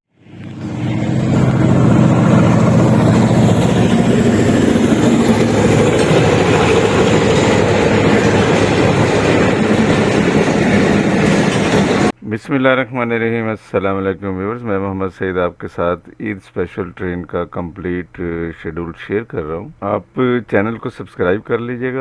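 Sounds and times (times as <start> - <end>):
train rumbling past: 0.1 - 12.2.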